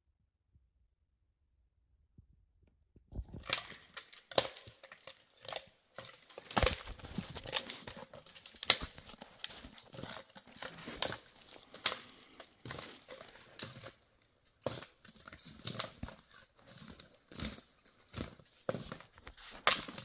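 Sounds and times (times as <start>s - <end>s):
rustling and crunching: 3.1s - 20.0s
sharp snaps and clicks: 19.2s - 20.0s.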